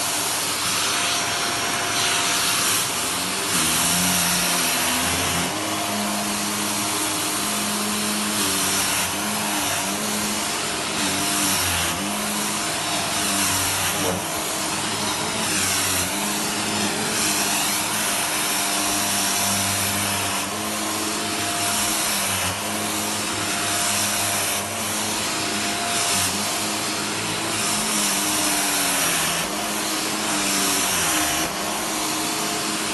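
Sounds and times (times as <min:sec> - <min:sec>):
vacuum cleaner on carpet: 0:00.0 - 0:32.9.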